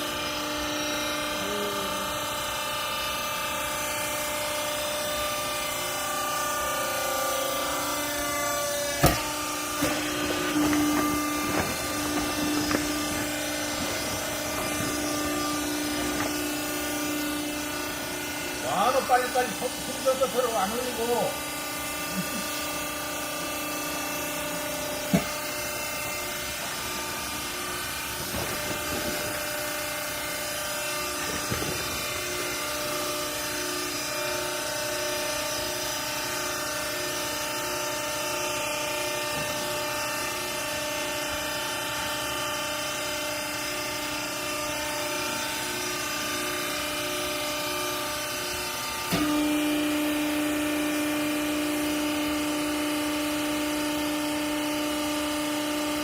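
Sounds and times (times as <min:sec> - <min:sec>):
baler motor and pump hum: 0:00.0 - 0:56.0.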